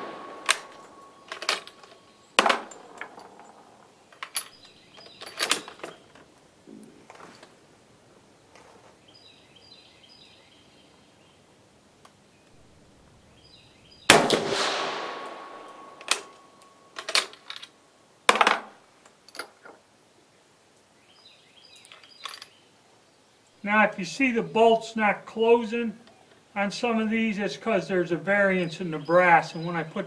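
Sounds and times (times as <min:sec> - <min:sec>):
rifle shot with ringing echo: 0:00.0 - 0:01.4, 0:14.1 - 0:16.9.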